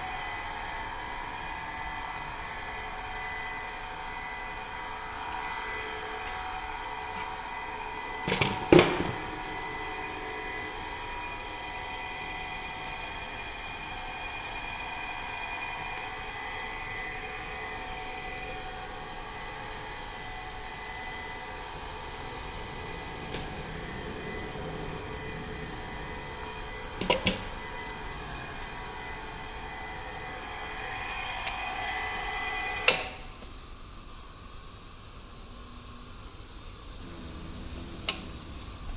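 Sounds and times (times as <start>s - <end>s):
roller conveyor humming: 0.0s - 33.7s, 36.8s - 38.9s
sharp clattering knocks: 8.3s - 9.7s.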